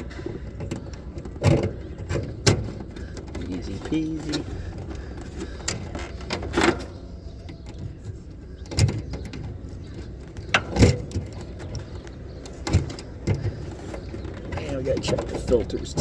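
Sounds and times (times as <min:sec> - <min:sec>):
knocks and clicks of tools: 0:08.6 - 0:16.0.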